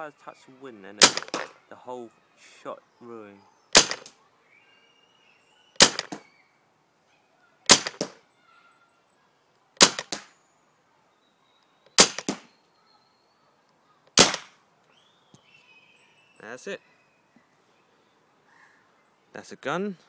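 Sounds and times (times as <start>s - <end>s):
paintball pistol shots: 1.0s - 1.6s, 3.7s - 4.2s, 5.8s - 6.3s, 7.7s - 8.2s, 9.8s - 10.4s, 12.0s - 12.5s, 14.1s - 14.6s.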